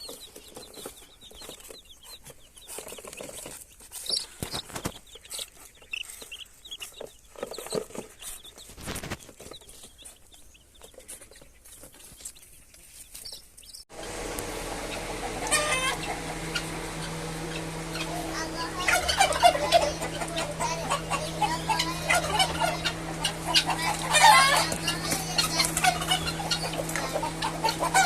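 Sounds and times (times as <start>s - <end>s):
baby chicks peeping: 0.0s - 28.0s
loud steady hum: 13.9s - 28.0s.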